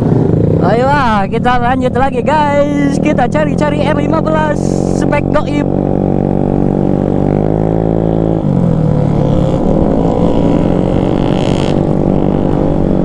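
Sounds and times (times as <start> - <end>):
motorcycle engine accelerating: 0.0 - 13.0.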